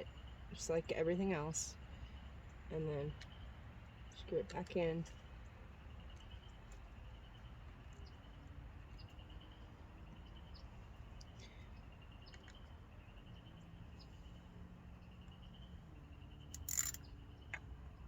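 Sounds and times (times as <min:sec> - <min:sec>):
low steady hum: 0:00.0 - 0:18.0
small clicks and taps of parts: 0:12.3 - 0:12.6
screw being driven in: 0:16.5 - 0:17.0.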